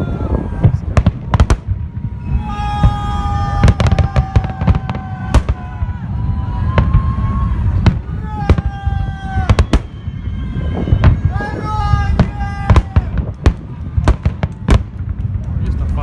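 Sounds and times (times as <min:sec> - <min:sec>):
fireworks bangs: 0:00.0 - 0:16.0
low rumble: 0:00.0 - 0:16.0
high whistle tone: 0:09.5 - 0:11.4.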